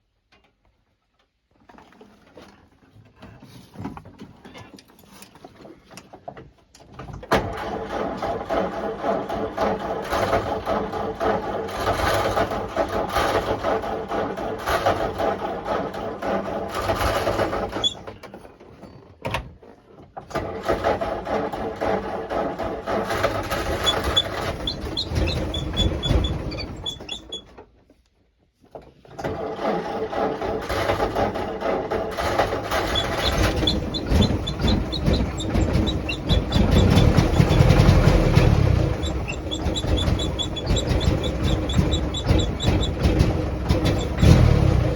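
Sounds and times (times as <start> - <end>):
engine running roughly: 7.5 - 18.0, 20.3 - 27.4, 29.3 - 44.9.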